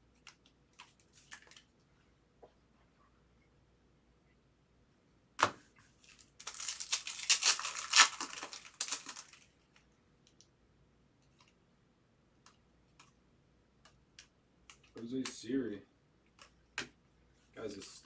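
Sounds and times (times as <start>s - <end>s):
foil wrapper crinkling and tearing: 6.0s - 9.5s.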